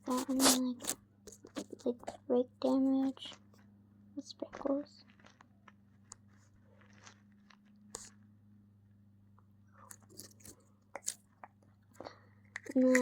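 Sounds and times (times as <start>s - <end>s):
low steady hum: 0.0s - 13.0s
slime crackling and clicking: 12.5s - 13.0s.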